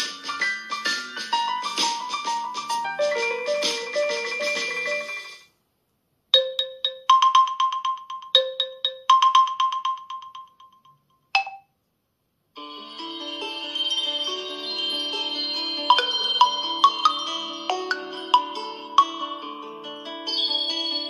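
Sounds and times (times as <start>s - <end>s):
keyboard-like ringtone melody: 0.0s - 5.5s, 6.4s - 11.7s, 12.6s - 21.0s
sustained layered ringtone: 0.0s - 5.5s, 6.4s - 11.7s, 12.6s - 21.0s
chiming ringtone notes: 2.8s - 5.5s, 6.4s - 11.7s, 12.6s - 21.0s.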